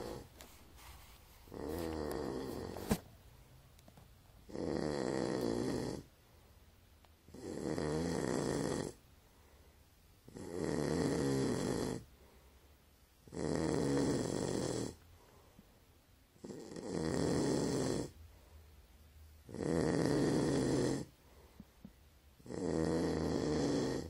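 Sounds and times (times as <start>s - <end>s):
animal snoring loudly: 0.0s - 0.3s, 1.5s - 2.8s, 4.5s - 6.1s, 7.3s - 9.0s, 10.2s - 12.0s, 13.2s - 15.0s, 16.4s - 18.2s, 19.5s - 21.1s, 22.4s - 24.0s.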